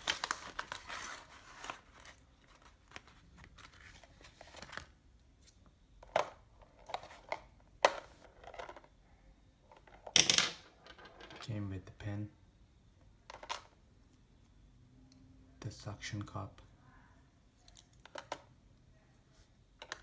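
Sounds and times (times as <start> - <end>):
plastic packaging crinkling: 0.0 - 4.9.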